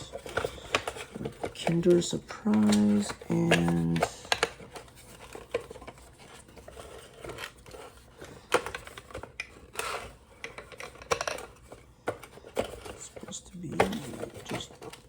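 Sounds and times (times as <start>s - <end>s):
plastic parts clicking and scraping: 0.0s - 15.0s.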